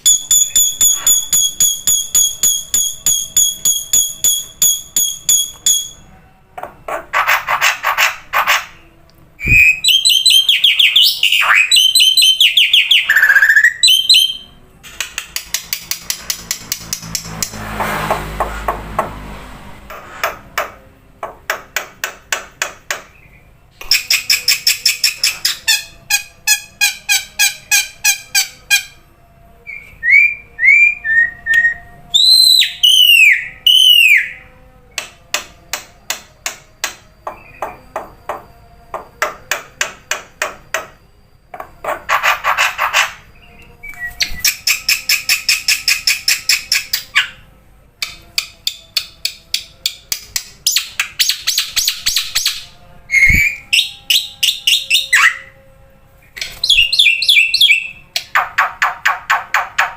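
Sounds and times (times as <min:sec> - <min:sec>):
loud whistled bird notes: 0:09.4 - 0:14.5, 0:29.6 - 0:34.4, 0:50.7 - 0:55.6, 0:56.6 - 0:58.0.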